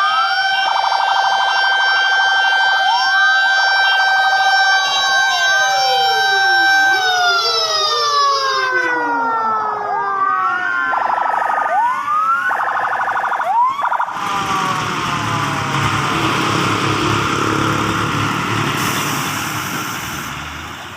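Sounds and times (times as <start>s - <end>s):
siren whoops and yelp: 0.0s - 15.0s
electronic sirens wailing: 0.0s - 18.9s.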